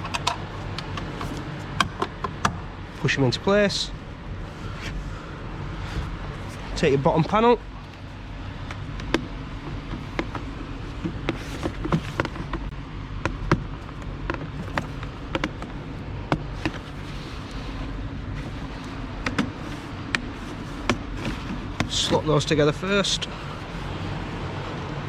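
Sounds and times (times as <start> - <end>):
low workshop hum: 0.0 - 25.0
hard plastic clicks and knocks: 8.7 - 16.8.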